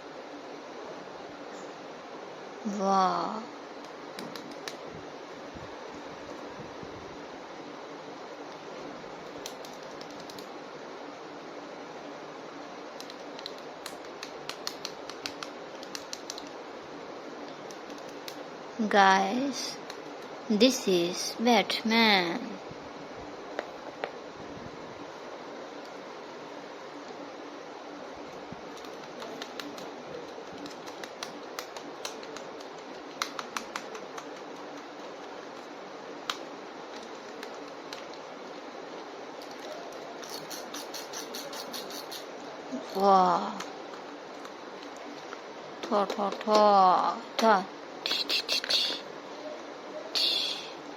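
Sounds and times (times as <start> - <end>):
steady background hiss: 0.0 - 50.9.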